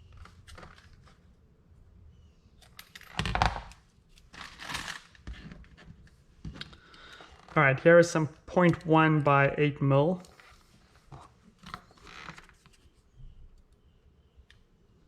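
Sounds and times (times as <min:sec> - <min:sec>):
crinkling: 0:03.1 - 0:07.6.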